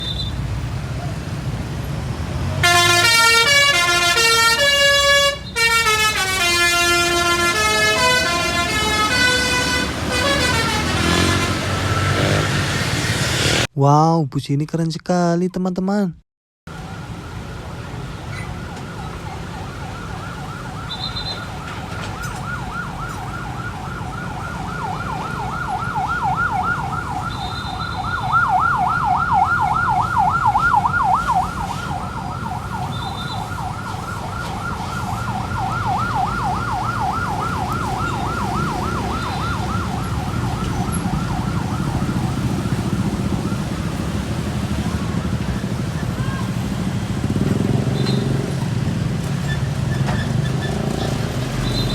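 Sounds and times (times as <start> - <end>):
bus musical horn warbling: 2.6 - 12.3.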